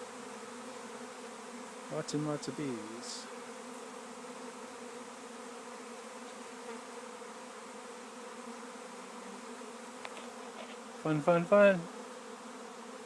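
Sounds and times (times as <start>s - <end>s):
swarm of bees buzzing: 0.0s - 13.0s.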